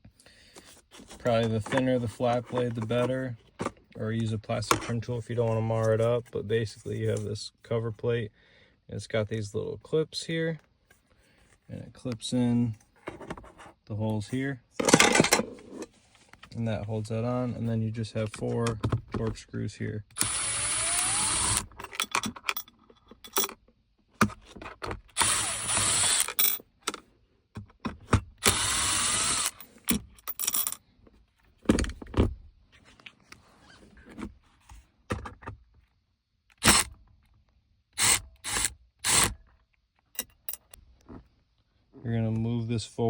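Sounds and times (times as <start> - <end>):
screws and plastic parts clicking: 20.1 - 23.6, 24.2 - 27.0, 27.6 - 30.8, 36.5 - 37.0, 38.0 - 40.8
cordless drill whirring: 20.2 - 21.7, 25.2 - 26.3, 28.4 - 29.6, 36.6 - 36.9, 38.0 - 39.4.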